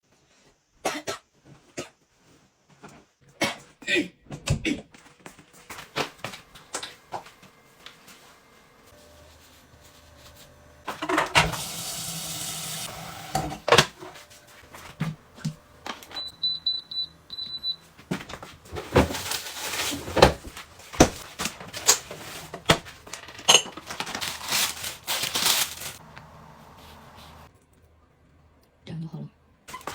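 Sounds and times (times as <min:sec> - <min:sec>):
appliance button beeps: 0:16.1 - 0:17.8.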